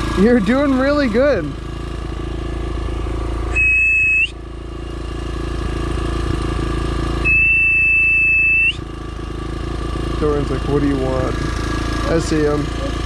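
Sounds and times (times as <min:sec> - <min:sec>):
dirt bike engine idling: 0:00.0 - 0:13.0
high whistle or beep: 0:03.5 - 0:04.4, 0:07.2 - 0:08.8.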